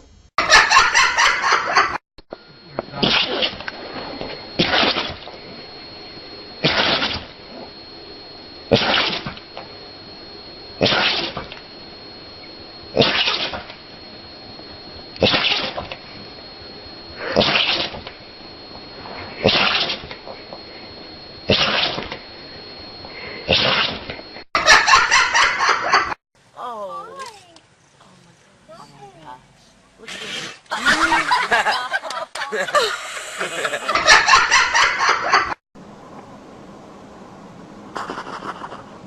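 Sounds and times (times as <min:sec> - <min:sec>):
faint high whine: 0:00.0 - 0:34.6, 0:35.8 - 0:39.0
animal sneezing: 0:06.6 - 0:07.2, 0:30.1 - 0:30.7.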